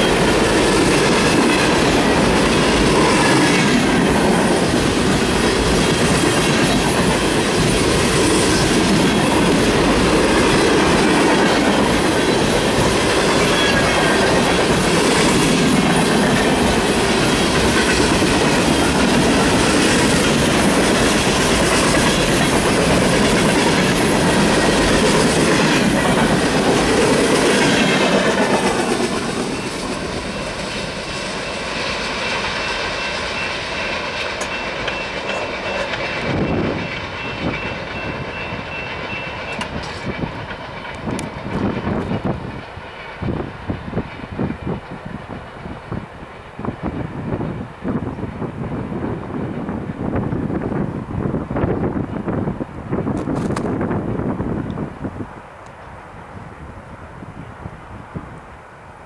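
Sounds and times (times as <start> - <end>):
wheels clickety-clack over joints: 0.0 - 31.1, 33.8 - 48.2
freight train rolling past: 0.0 - 59.0.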